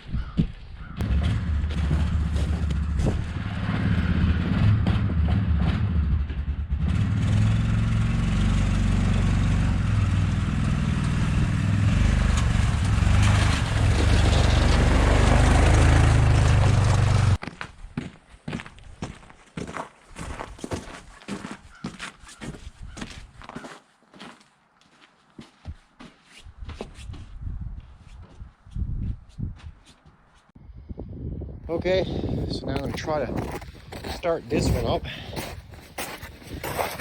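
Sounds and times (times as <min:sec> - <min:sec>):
vehicle engine running: 0:01.0 - 0:17.4.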